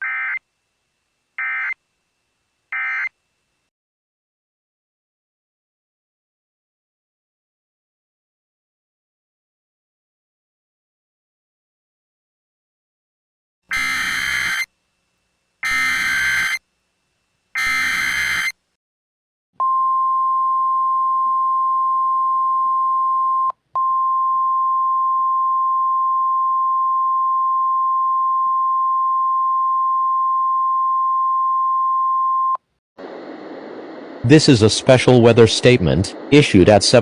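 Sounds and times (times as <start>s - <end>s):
steady high alarm tone: 0.0s - 0.4s, 1.4s - 1.8s, 2.8s - 3.1s, 13.7s - 14.7s, 15.6s - 16.6s, 17.6s - 18.6s
digital data tone bursts: 13.7s - 14.7s, 15.6s - 16.6s, 17.6s - 18.6s.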